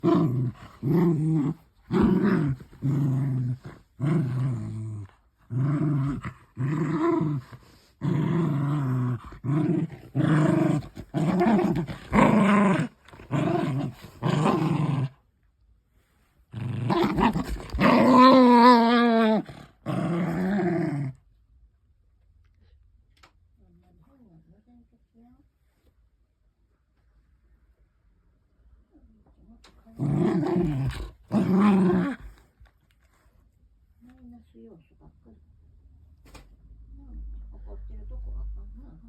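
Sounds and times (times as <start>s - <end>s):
dog play-growling: 0.0s - 15.2s, 16.5s - 21.2s, 29.9s - 32.6s.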